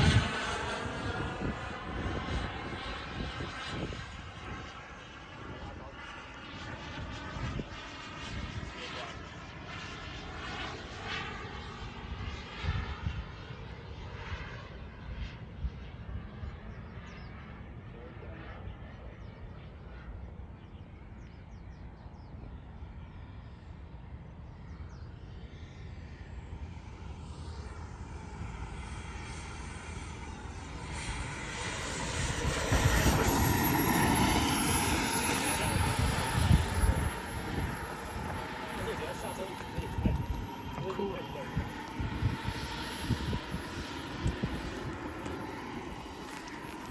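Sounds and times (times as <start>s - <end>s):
wind buffeting microphone: 0.0s - 5.8s, 12.0s - 13.4s, 30.7s - 46.9s
model jet engine whine: 0.0s - 46.9s.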